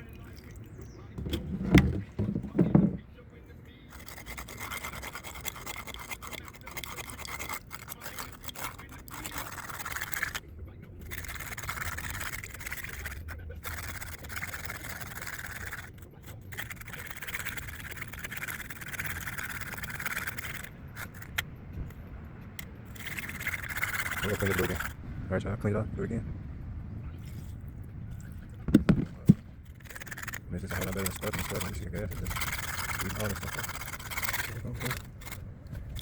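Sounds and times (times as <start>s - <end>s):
brush scrubbing metal parts: 1.2s - 3.1s, 3.8s - 10.4s, 11.0s - 21.4s, 22.8s - 25.0s, 28.7s - 36.0s.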